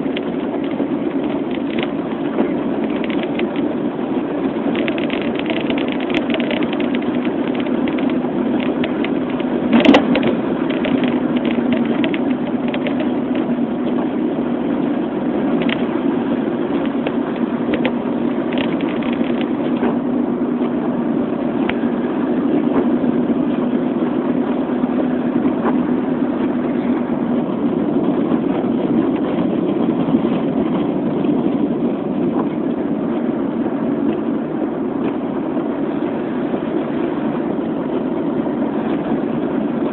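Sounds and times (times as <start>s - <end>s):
car engine and road drone: 0.0s - 39.9s
light ticks: 4.7s - 13.5s.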